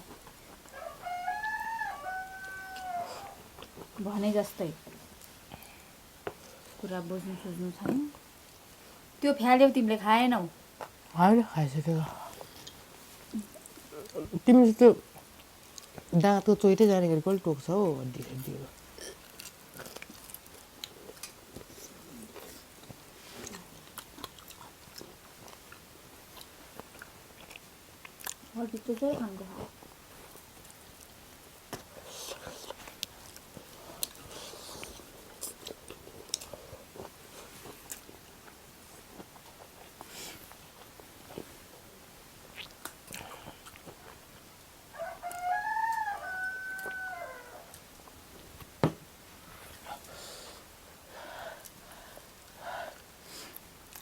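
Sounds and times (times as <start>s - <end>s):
rooster crowing: 0.7s - 3.4s, 44.9s - 47.8s
person chewing crunchy food: 18.8s - 28.5s, 29.7s - 41.6s, 42.4s - 44.5s
clicks and smacks of eating: 18.8s - 29.2s, 30.3s - 41.5s, 42.5s - 44.4s, 53.5s - 54.0s.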